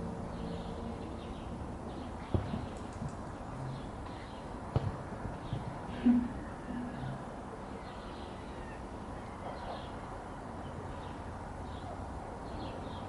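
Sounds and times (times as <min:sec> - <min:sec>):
steady background noise: 0:00.0 - 0:13.0
birds chirping: 0:00.3 - 0:13.0.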